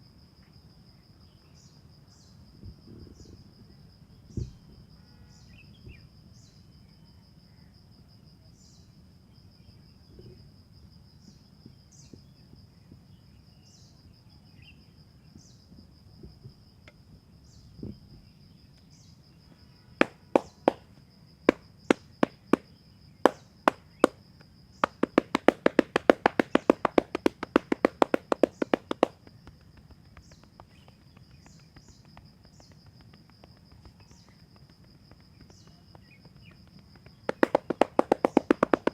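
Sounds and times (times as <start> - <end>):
high insect trill: 17.4 - 38.9
chopping strikes: 20.0 - 20.8, 24.8 - 29.2, 37.3 - 38.9
hands slapping a back: 20.0 - 20.8, 21.5 - 22.6, 23.3 - 24.2, 24.8 - 38.9.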